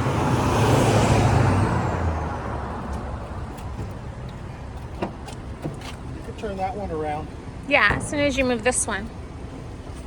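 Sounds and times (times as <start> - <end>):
motor vehicle passing: 0.0 - 5.2.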